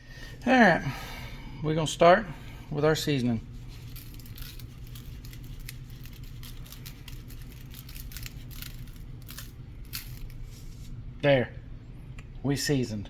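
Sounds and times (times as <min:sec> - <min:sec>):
low steady hum: 0:00.0 - 0:13.0
seasoning shaker rattling: 0:03.7 - 0:10.5.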